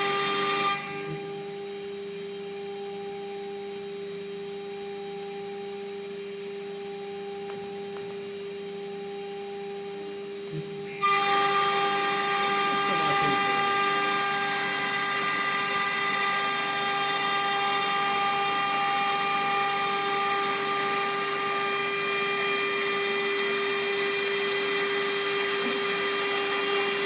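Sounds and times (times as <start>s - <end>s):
router spindle high-pitched whine: 0.0s - 27.0s
hiss of metal cutting: 11.0s - 15.5s.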